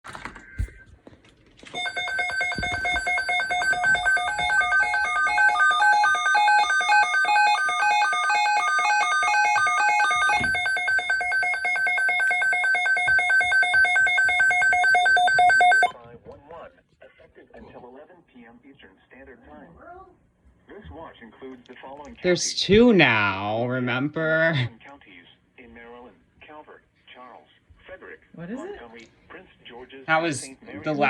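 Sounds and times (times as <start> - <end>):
pulsing emergency alert tone: 1.8 - 15.9
two-pitch alert tone: 1.8 - 15.9.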